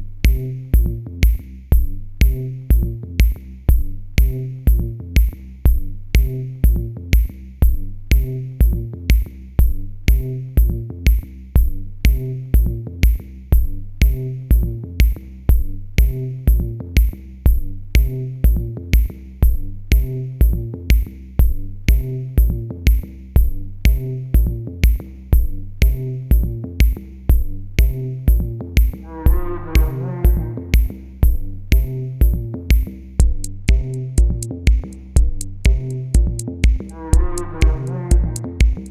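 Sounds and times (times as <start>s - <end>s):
electronic dance music: 29.2s - 30.9s, 35.7s - 38.9s.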